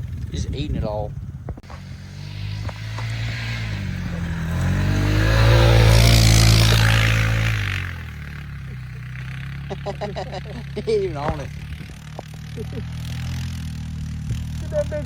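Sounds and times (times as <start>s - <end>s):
vehicle driving past: 1.2s - 15.0s.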